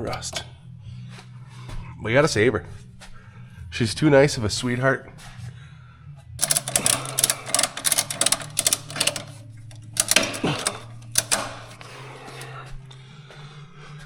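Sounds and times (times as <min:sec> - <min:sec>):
steady low hum: 0:00.0 - 0:14.0
ratchet strap clicking: 0:06.4 - 0:11.9.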